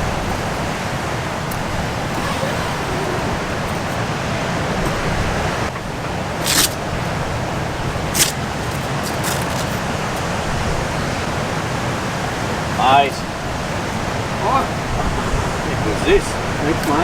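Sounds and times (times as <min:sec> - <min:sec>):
ocean surf: 0:00.0 - 0:17.0
strong wind: 0:00.0 - 0:17.0
sharp hisses: 0:02.1 - 0:04.0.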